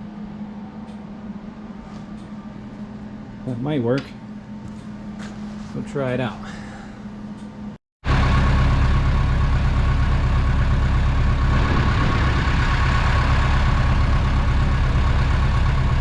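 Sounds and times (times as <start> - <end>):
tractor engine running: 8.0 - 16.0
thin steady whine: 8.5 - 16.0.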